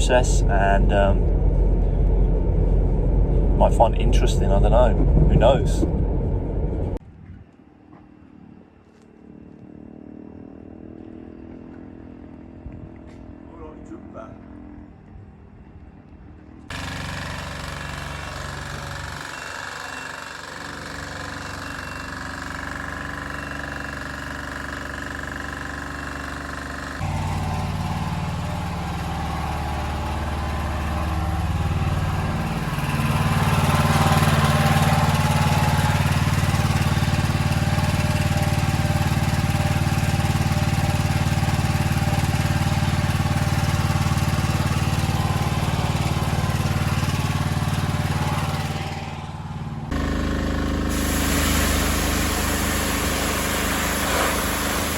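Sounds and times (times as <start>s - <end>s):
engine-driven machinery running: 0.0s - 7.0s, 16.7s - 54.9s
hiss: 50.9s - 54.9s.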